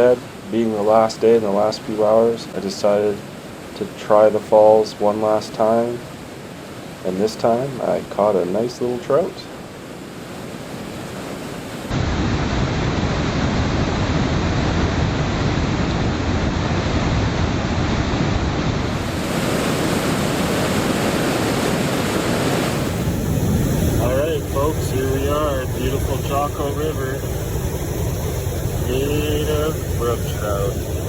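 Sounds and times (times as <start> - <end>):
river rapids rushing: 18.8 - 27.4.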